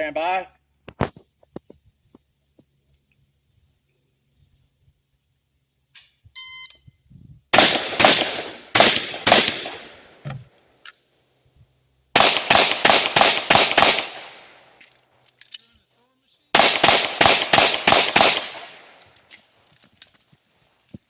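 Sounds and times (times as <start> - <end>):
shot timer beep: 6.4 - 7.0
gunshots: 7.5 - 10.2, 12.2 - 14.7, 16.5 - 19.0.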